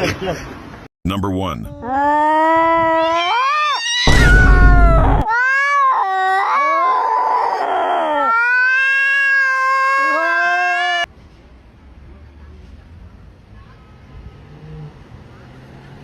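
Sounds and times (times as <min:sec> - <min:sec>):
cats yowling: 0:01.7 - 0:11.1.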